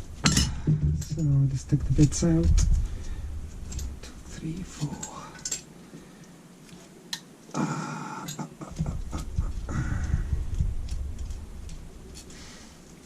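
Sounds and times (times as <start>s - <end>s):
low rumble of handling: 0.0s - 6.0s, 8.6s - 13.0s
small metal parts clicking and scraping: 0.2s - 6.8s.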